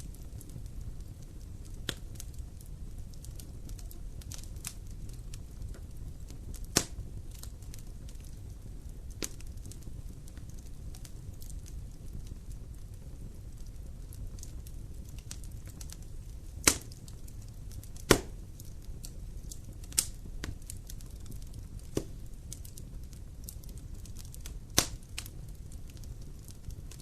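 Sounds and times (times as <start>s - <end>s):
wood fire crackling: 0.0s - 27.0s
sharp loud pops of fire: 6.6s - 7.6s, 16.6s - 17.1s, 17.8s - 18.5s, 21.3s - 22.2s, 24.4s - 25.3s.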